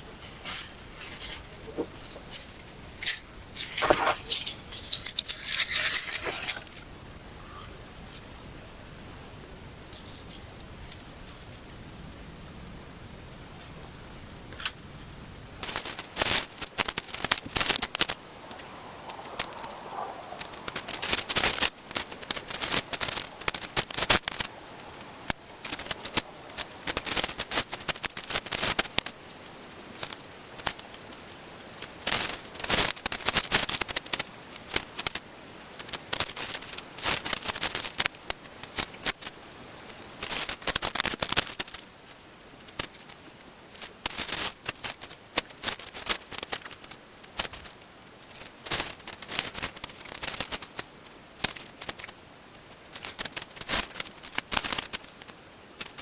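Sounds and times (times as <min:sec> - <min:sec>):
crunching and crackling handling: 0:00.0 - 0:06.9, 0:14.6 - 0:34.0.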